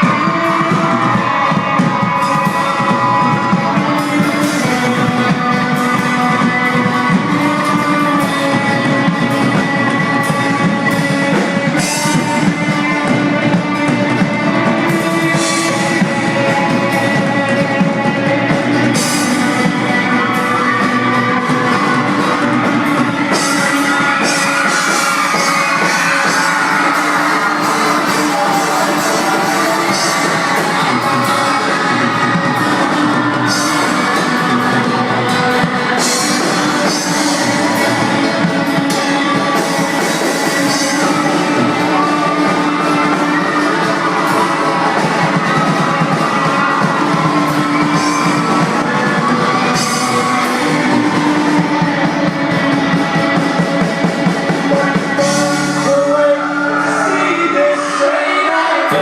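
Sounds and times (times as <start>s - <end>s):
rock band playing live: 0.0s - 59.0s.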